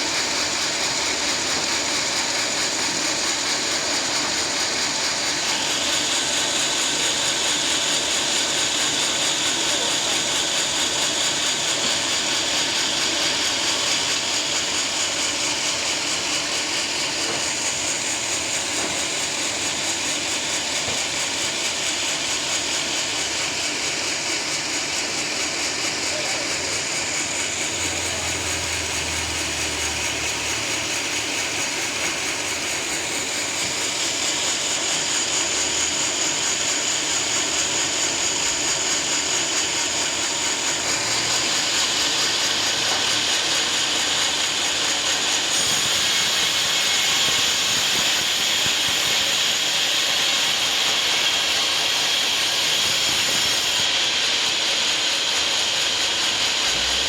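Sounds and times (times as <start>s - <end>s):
band saw cutting log: 0.0s - 57.0s.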